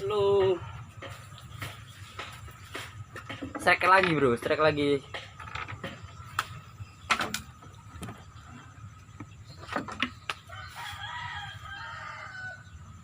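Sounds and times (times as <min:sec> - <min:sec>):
sharp clicks and knocks: 0:01.0 - 0:08.2
rooster crowing: 0:10.4 - 0:13.0.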